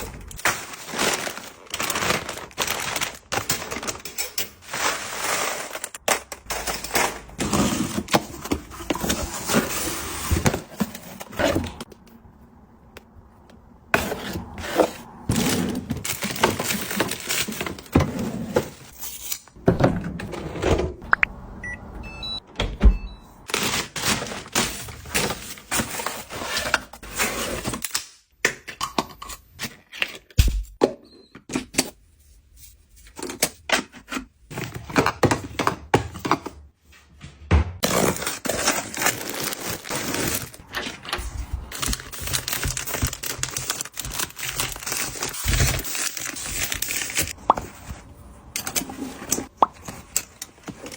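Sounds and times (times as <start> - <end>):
packaging crinkling: 0.0 - 4.0, 37.8 - 47.4.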